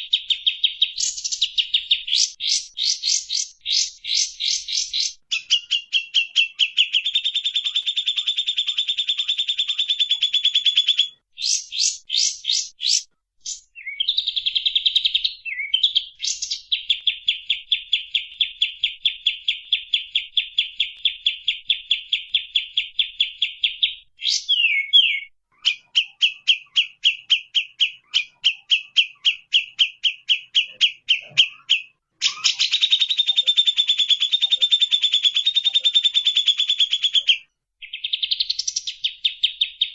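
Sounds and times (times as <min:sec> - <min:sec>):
songbird singing rapid trills: 0:00.0 - 0:39.9.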